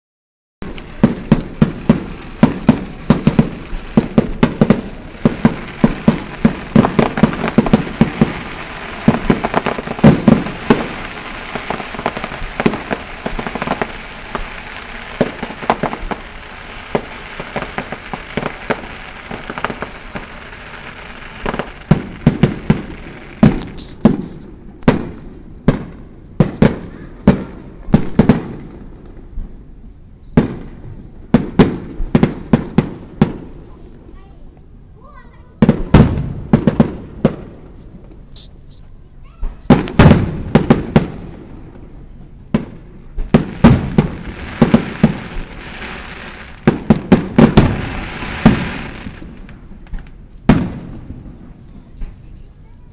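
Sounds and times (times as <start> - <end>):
fireworks bangs: 0.6 - 29.6, 30.2 - 52.9
fireworks crackling: 0.6 - 52.9.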